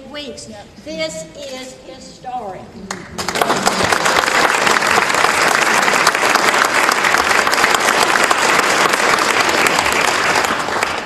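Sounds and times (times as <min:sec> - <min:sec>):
audience clapping: 0:02.9 - 0:11.0.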